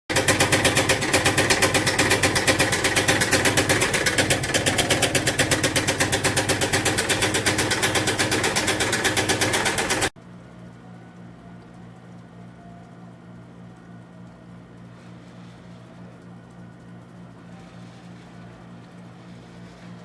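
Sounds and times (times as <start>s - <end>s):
machine pulsing rattle: 0.1s - 10.2s.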